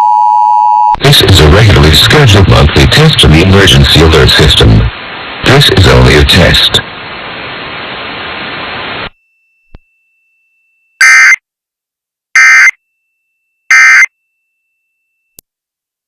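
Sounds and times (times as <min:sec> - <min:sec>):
radio hiss: 0:01.0 - 0:09.1
harsh data bursts: 0:01.1 - 0:06.8.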